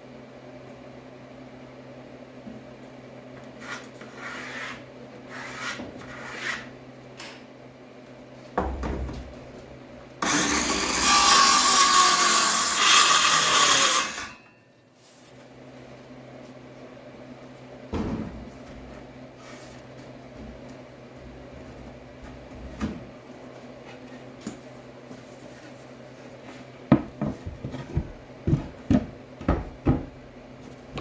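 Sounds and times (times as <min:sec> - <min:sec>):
power tool running loudly: 0:10.2 - 0:14.4
thump: 0:17.9 - 0:18.4.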